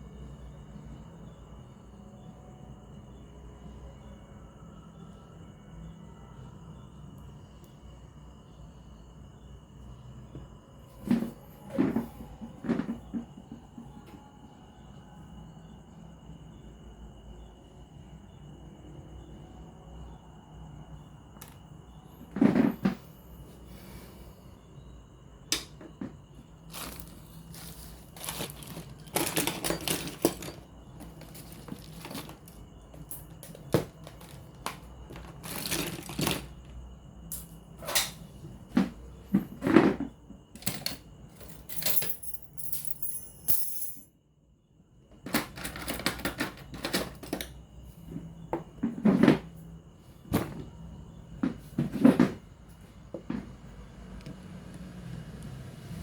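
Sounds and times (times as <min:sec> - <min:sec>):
tools clicking and tapping: 0:26.7 - 0:36.4.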